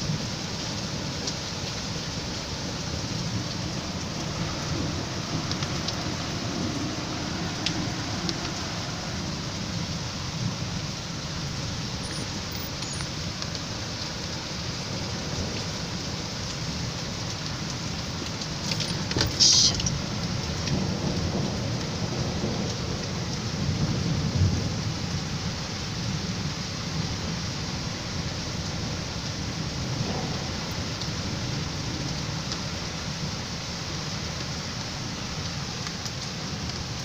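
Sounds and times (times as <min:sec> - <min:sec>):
heavy rain: 0:00.0 - 0:37.0
low rumbling thunder: 0:03.2 - 0:11.9, 0:19.8 - 0:26.6, 0:28.8 - 0:33.3
sharp crackle: 0:11.9 - 0:14.3, 0:14.9 - 0:20.8.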